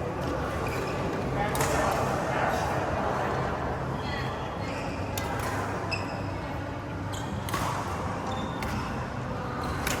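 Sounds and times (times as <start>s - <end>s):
shoes squeaking on court floor: 4.4s - 6.3s
rackets smacking shuttlecock: 7.3s - 10.0s.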